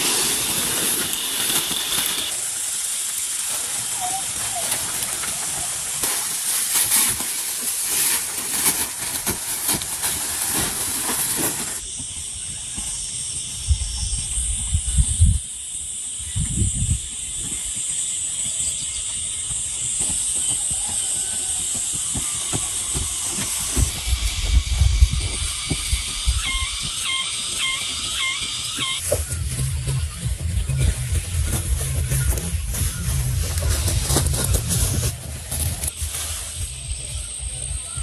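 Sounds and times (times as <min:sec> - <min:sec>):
rain hissing: 0:00.0 - 0:07.2
wind gusts on microphone: 0:13.6 - 0:15.5, 0:23.6 - 0:26.9.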